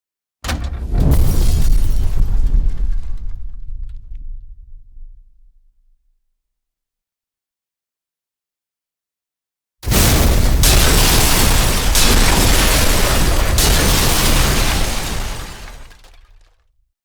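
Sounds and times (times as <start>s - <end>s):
explosion blasts with deep rumble: 0.5s - 5.8s, 9.8s - 16.0s.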